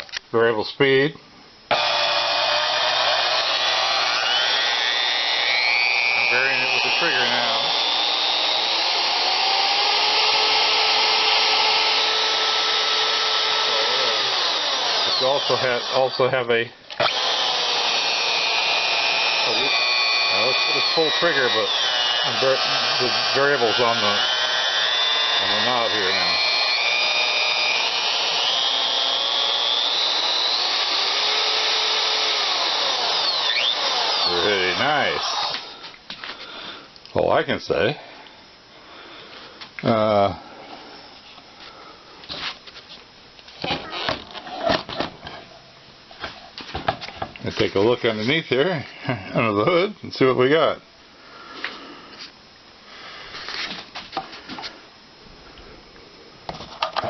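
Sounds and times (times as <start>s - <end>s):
band saw motor whine: 1.5s - 35.9s.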